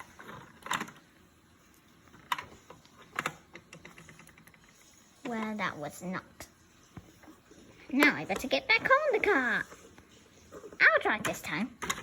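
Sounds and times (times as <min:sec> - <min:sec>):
plastic toys clicking and tapping: 0:00.0 - 0:01.1, 0:02.1 - 0:05.6, 0:08.0 - 0:09.5, 0:11.0 - 0:12.0.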